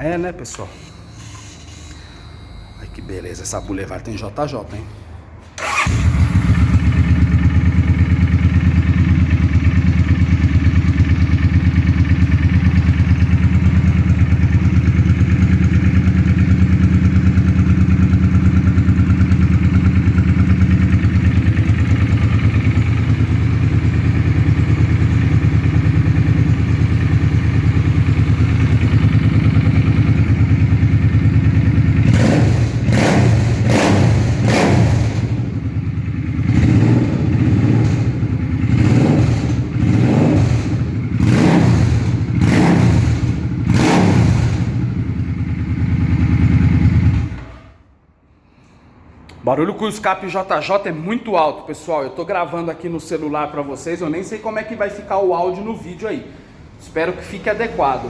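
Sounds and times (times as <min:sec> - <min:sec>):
motorcycle engine idling: 0:05.6 - 0:47.4.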